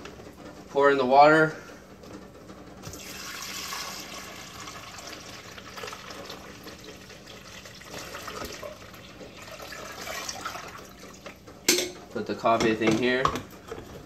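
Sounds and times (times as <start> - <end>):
water pouring into reservoir: 2.8 - 11.3.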